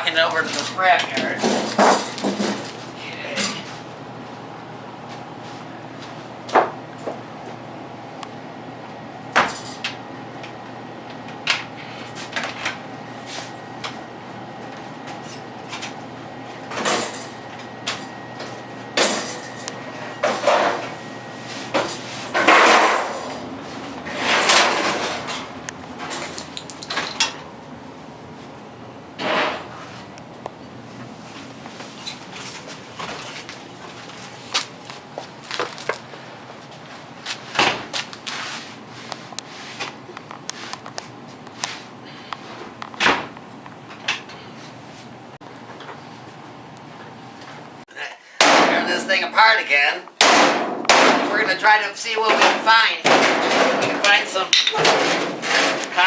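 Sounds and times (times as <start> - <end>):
sheet metal scraping and clanking: 24.0 - 27.4, 29.2 - 30.0, 54.7 - 56.0.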